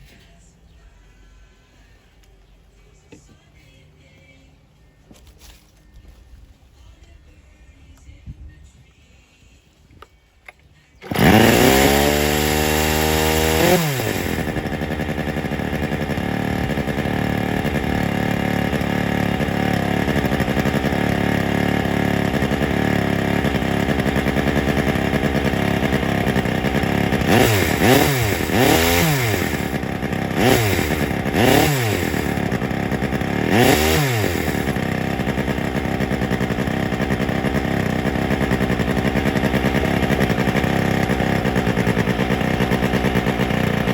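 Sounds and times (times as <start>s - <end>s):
chainsaw engine revving and idling: 11.0s - 43.9s.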